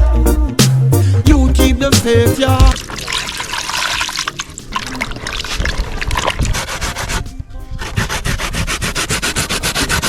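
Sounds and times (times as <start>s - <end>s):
background music: 0.0s - 4.8s
potatoes scraping on grater: 5.2s - 10.0s.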